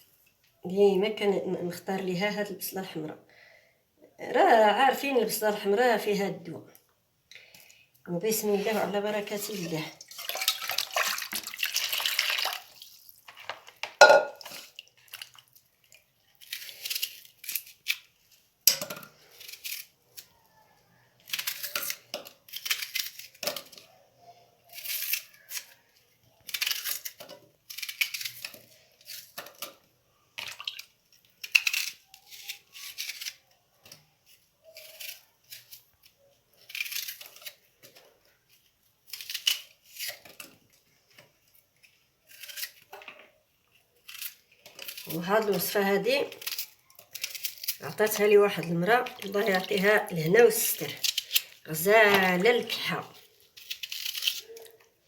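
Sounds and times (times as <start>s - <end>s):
onion being peeled and cut: 7.4s - 55.0s.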